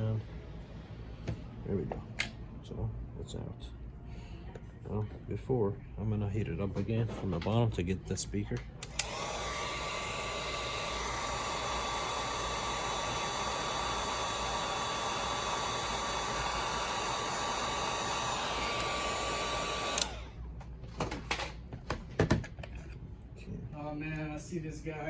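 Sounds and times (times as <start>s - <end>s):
heat gun blowing: 8.8s - 20.4s.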